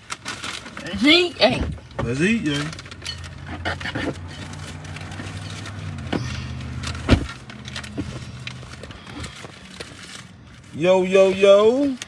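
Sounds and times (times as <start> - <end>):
car engine idling: 0.1 - 12.0
sharp thump: 7.0 - 7.4.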